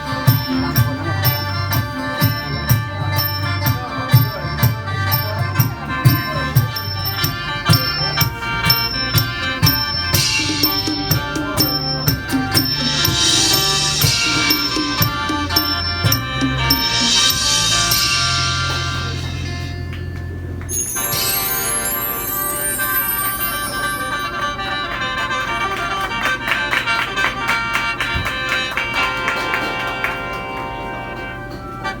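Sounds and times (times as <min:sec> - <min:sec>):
hand drum beat: 0:00.0 - 0:19.8
high percussion hiss: 0:00.0 - 0:24.5
mouth organ playing chords: 0:00.0 - 0:32.0.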